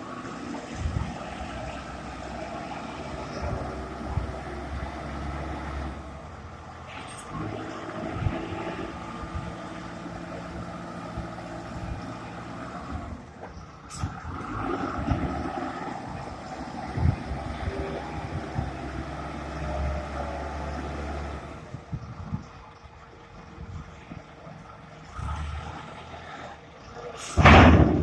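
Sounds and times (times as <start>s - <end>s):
diesel engine under load: 0.0s - 28.0s.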